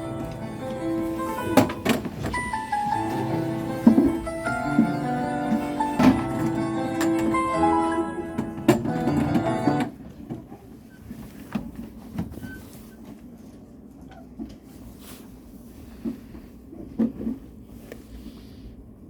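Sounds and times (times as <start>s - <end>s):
guitar background music: 0.0s - 9.9s.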